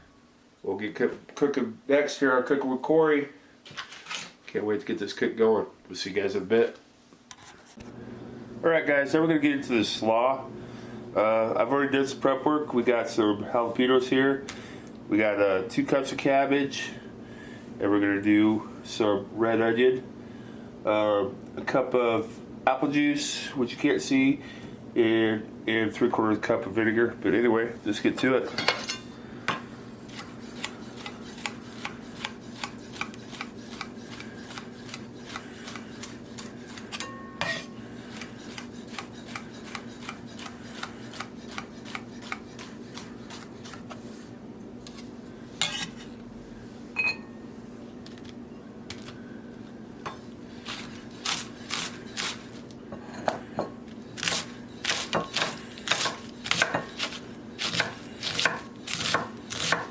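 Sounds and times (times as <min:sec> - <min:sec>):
steady low hum: 0:04.5 - 0:59.9
knife chopping on board: 0:30.1 - 0:44.0, 0:54.2 - 0:59.9.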